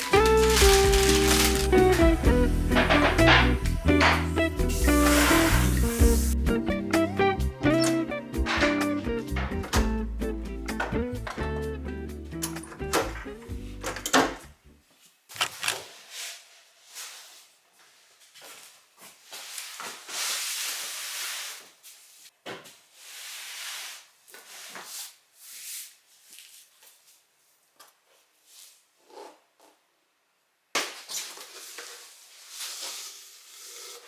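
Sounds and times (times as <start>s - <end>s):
rustling: 0.0s - 6.4s.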